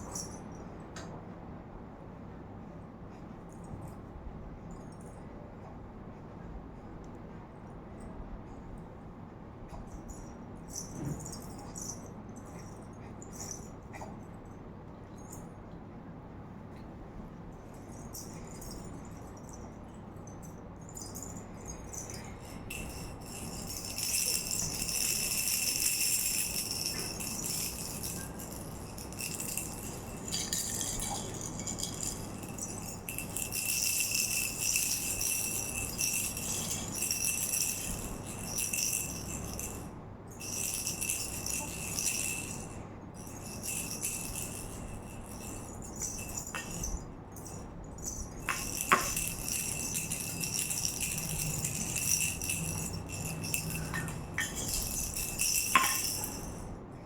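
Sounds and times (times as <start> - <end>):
jingling rattle toy shaken: 0.0 - 0.6, 9.8 - 14.1, 17.5 - 56.8.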